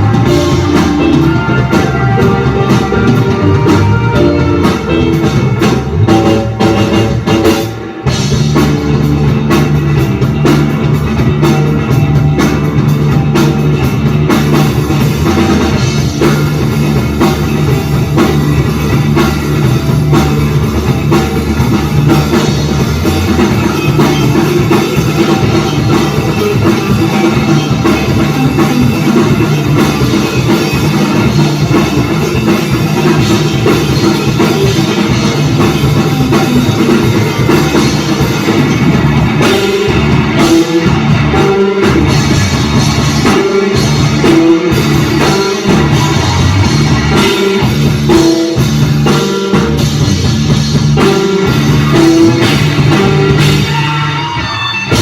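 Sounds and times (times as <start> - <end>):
rock band playing live: 0.0 - 55.0.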